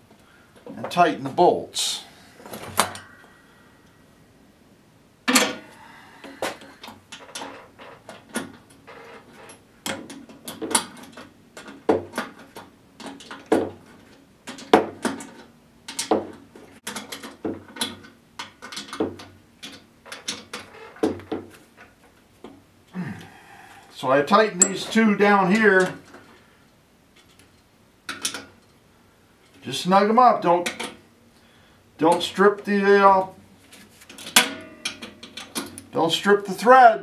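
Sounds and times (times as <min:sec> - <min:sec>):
wrench clanking on metal bolts: 0:24.5 - 0:26.0, 0:34.1 - 0:35.9.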